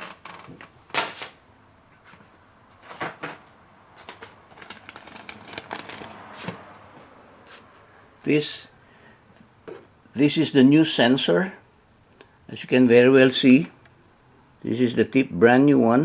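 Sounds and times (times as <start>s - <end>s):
packaging rustling: 4.0s - 6.8s.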